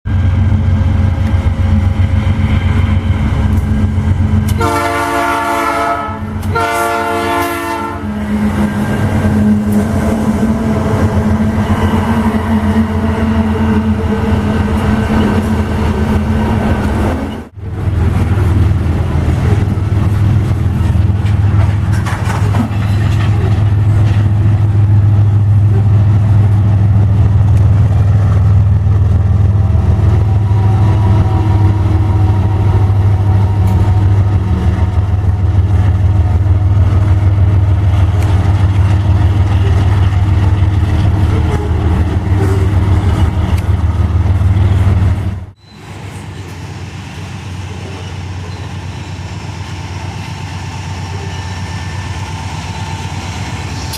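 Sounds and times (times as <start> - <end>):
diesel locomotive rumbling: 0.0 - 53.9.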